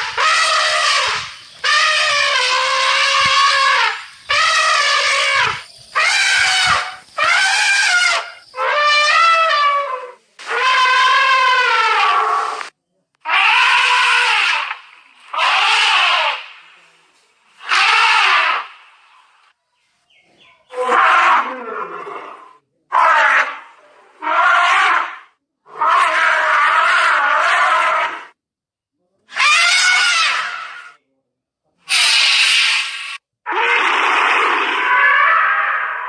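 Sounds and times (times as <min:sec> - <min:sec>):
elephant trumpeting: 0:00.0 - 0:09.8, 0:13.2 - 0:14.7, 0:31.9 - 0:36.0.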